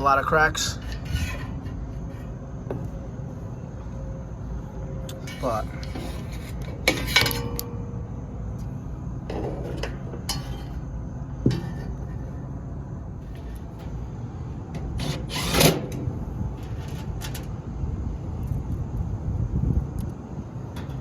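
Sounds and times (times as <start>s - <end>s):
metal parts scraping: 0.4s - 2.4s, 5.1s - 7.8s, 9.3s - 10.9s, 13.2s - 17.5s.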